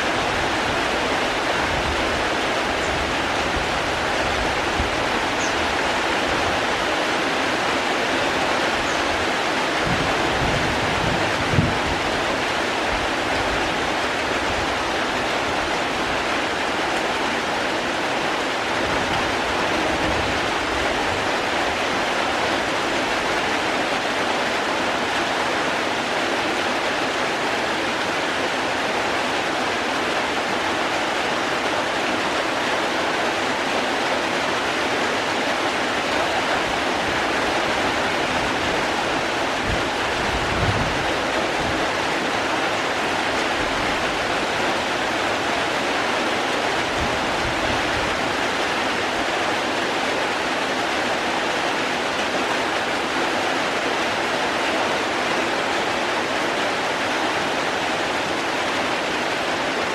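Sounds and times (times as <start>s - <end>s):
falling water rushing: 0.0s - 59.9s.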